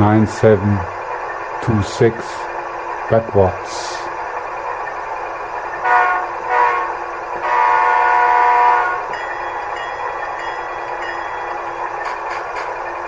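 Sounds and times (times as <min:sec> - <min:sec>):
diesel engine sound through speaker: 0:00.0 - 0:09.1
locomotive horn blasts: 0:05.8 - 0:09.1.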